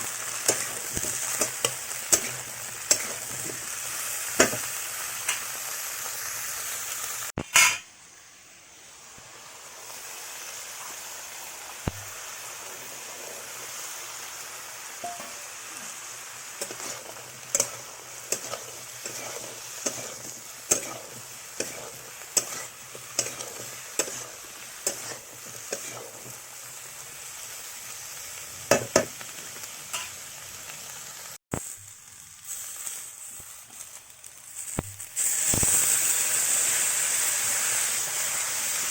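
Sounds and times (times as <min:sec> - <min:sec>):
spatula scraping a pan: 0:00.0 - 0:03.7, 0:07.4 - 0:07.9, 0:16.6 - 0:26.4
vegetables sizzling in a pan: 0:00.0 - 0:38.9.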